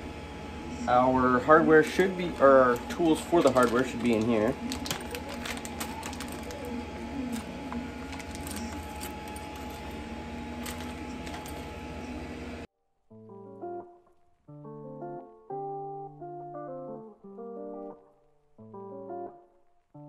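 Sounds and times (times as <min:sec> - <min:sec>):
background hum and hiss: 0:00.0 - 0:12.7
hand tools and hardware clatter: 0:02.4 - 0:12.2
plucked guitar notes: 0:13.1 - 0:19.5.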